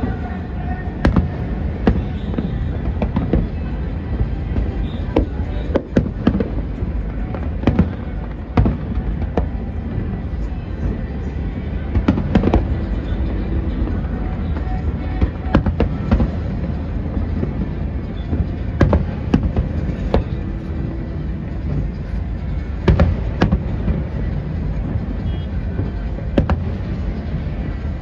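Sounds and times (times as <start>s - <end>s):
low rumble of firework bursts: 0.0s - 28.0s.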